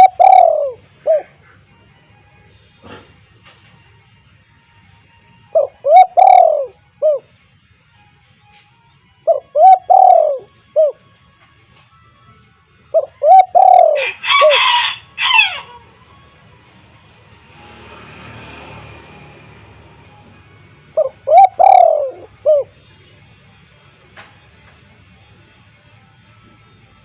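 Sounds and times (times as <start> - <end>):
rough noisy bird call: 0.0 - 1.5, 5.5 - 7.2, 9.3 - 11.0, 12.9 - 15.8, 20.9 - 22.8
dove cooing: 0.0 - 1.8, 5.5 - 7.3, 9.2 - 11.1, 12.9 - 15.9, 20.9 - 23.2.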